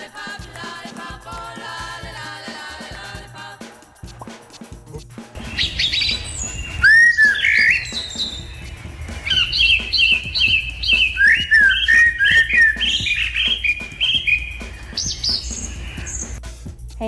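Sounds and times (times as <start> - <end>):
bird chirping: 4.9 - 16.5
bird whistling glides: 5.4 - 16.4.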